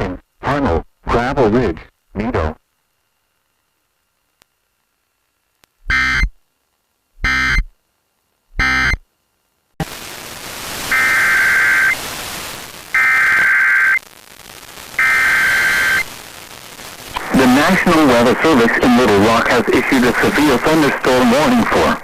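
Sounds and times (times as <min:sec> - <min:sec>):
radio static: 0:00.0 - 0:02.6, 0:09.8 - 0:22.0
screeching digital data bursts: 0:08.6 - 0:09.0, 0:10.8 - 0:12.1, 0:12.9 - 0:14.0, 0:15.0 - 0:16.1.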